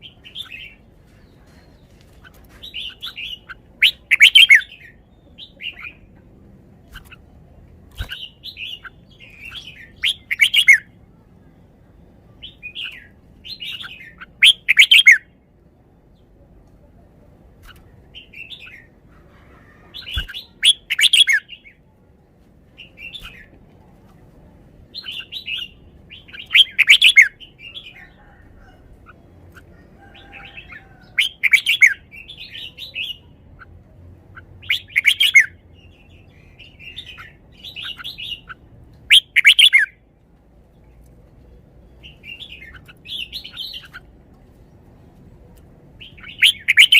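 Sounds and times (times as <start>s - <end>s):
bird singing warbled phrases: 0.0s - 16.4s, 17.6s - 19.3s, 19.9s - 21.9s, 22.8s - 23.5s, 24.9s - 40.0s, 41.6s - 44.2s, 45.9s - 46.9s
soft bird chirps: 46.0s - 46.9s.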